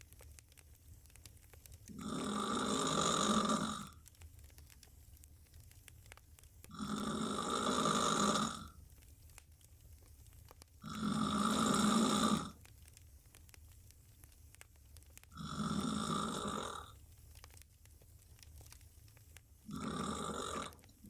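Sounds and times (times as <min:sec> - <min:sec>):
woman snoring: 0:01.9 - 0:03.9, 0:06.7 - 0:08.7, 0:10.8 - 0:12.6, 0:15.4 - 0:16.9, 0:19.7 - 0:20.8.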